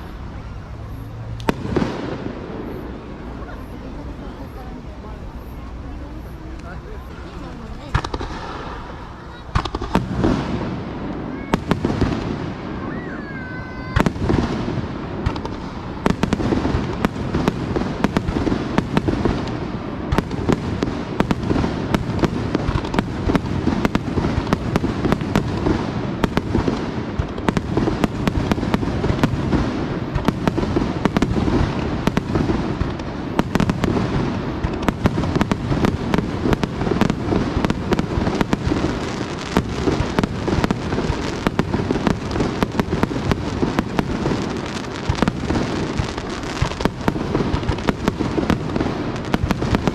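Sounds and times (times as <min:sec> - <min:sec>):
fireworks booming and crackling: 0:00.0 - 0:49.9
firework whistle: 0:08.0 - 0:16.2.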